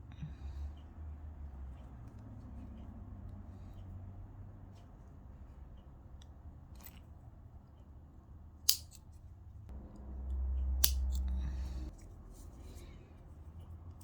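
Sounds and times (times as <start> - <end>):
steady low hum: 8.0 - 14.0
scissors snipping: 8.7 - 9.1, 10.6 - 11.6.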